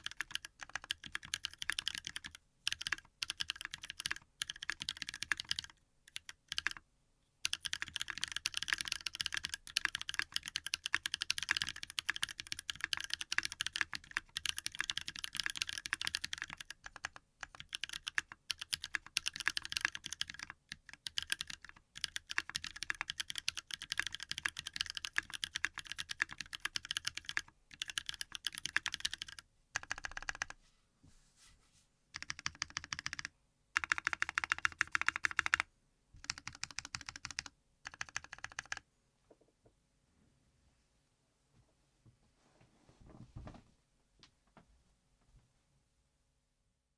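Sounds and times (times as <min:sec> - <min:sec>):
fast mechanical keyboard typing: 0:00.0 - 0:06.8, 0:07.4 - 0:30.6, 0:32.2 - 0:38.8.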